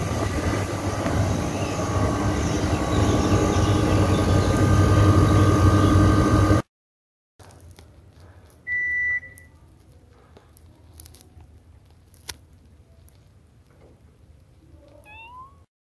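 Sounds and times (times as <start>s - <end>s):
low steady hum: 0.0s - 6.6s
air conditioner beep: 8.7s - 9.5s.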